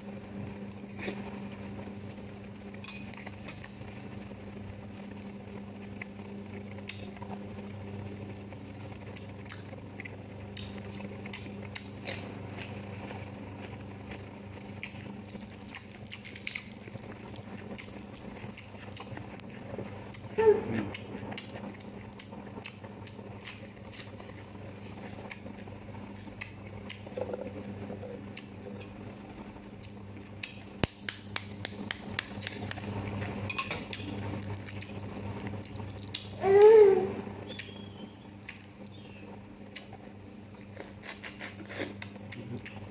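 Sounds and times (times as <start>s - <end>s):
steady low hum: 0.0s - 42.9s
cutlery and dishes clinking: 33.5s - 33.9s.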